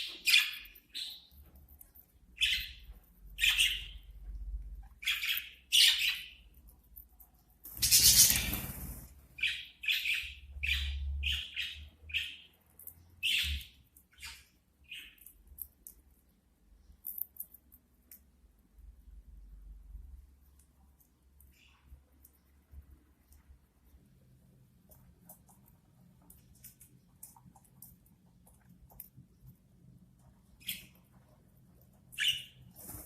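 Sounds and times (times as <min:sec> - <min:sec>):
budgerigars chirping and squawking: 0:02.4 - 0:02.8, 0:03.4 - 0:04.0, 0:05.0 - 0:06.4, 0:07.7 - 0:12.5, 0:32.1 - 0:32.7.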